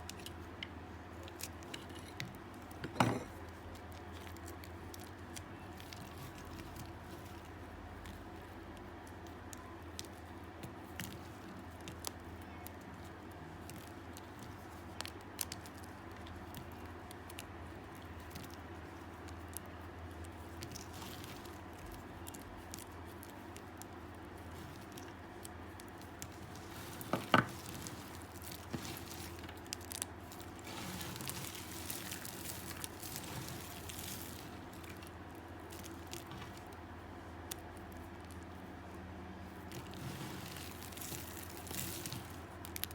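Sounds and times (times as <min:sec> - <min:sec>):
crumbly scraping: 0:09.9 - 0:38.8, 0:39.4 - 0:42.9.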